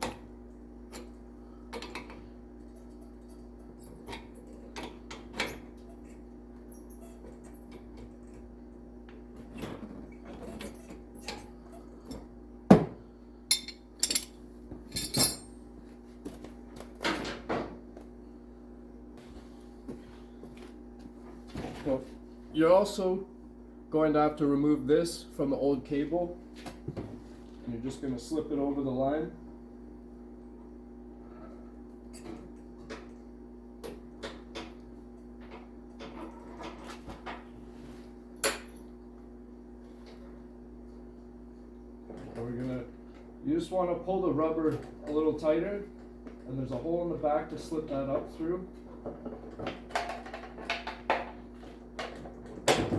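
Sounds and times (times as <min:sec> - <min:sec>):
steady low hum: 0:00.0 - 0:52.9
metal tools clinking: 0:13.5 - 0:15.5.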